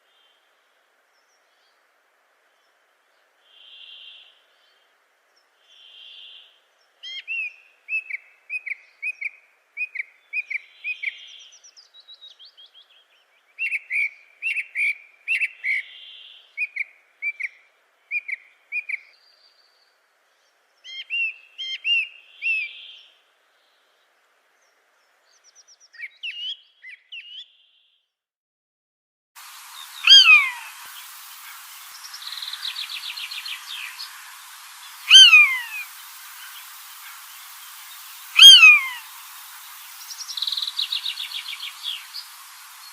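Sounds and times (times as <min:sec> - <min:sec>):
bird chirping song: 0:02.5 - 0:28.1, 0:29.6 - 0:42.9.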